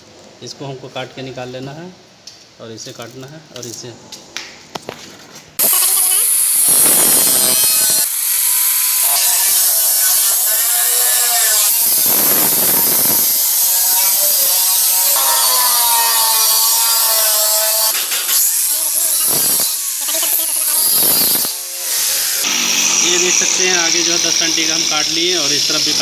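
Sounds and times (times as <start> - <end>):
power tool cutting sheet metal: 5.6 - 26.0.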